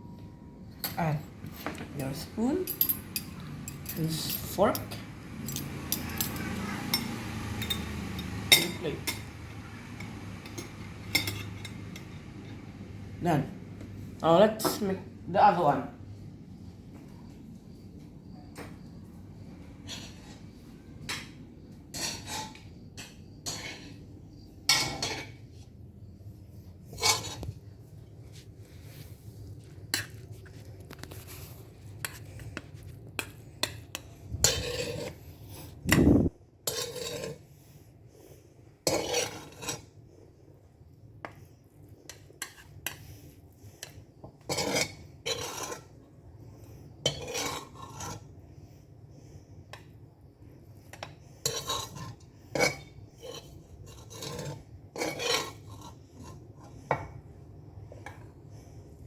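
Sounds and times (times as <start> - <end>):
utensil scraping a bowl: 19.8 - 20.6, 21.9 - 25.6, 26.8 - 27.7, 31.0 - 37.5, 38.9 - 40.0, 42.1 - 46.0, 47.0 - 48.3, 51.0 - 57.0.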